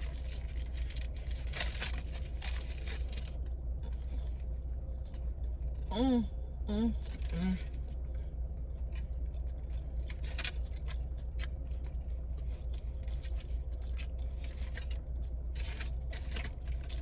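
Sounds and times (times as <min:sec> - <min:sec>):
crinkly clicks and rustles: 0:00.0 - 0:05.9, 0:07.0 - 0:17.0
person chewing: 0:08.8 - 0:17.0.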